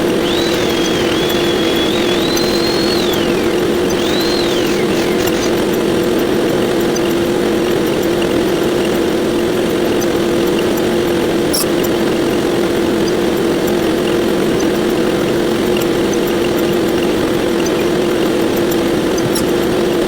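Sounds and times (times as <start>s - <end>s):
steady buzzing drone: 0.0s - 6.6s
faint ticks: 0.2s - 5.7s.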